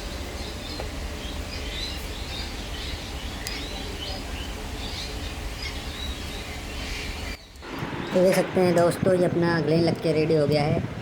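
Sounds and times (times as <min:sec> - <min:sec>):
small birds chirping: 0:00.0 - 0:08.7.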